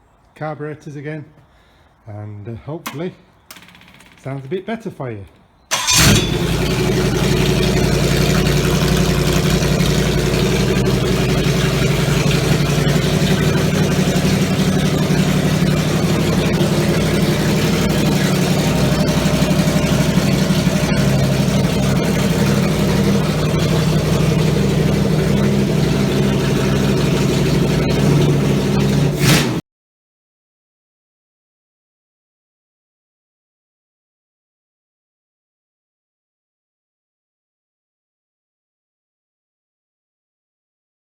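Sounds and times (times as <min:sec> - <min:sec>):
car engine idling: 0:05.7 - 0:29.3.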